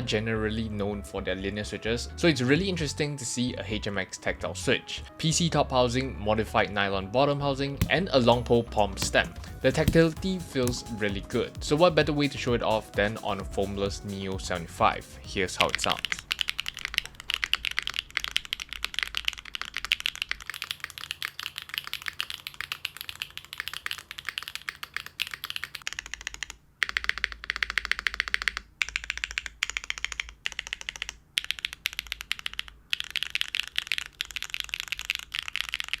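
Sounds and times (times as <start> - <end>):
mechanical keyboard typing: 15.6 - 36.0.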